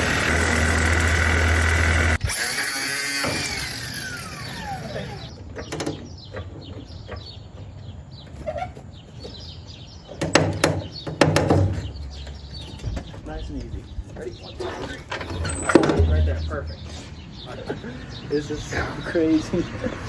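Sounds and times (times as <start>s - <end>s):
machine hum winding down: 0.0s - 5.3s
metallic clanks and knocks: 10.2s - 13.2s, 15.1s - 17.0s.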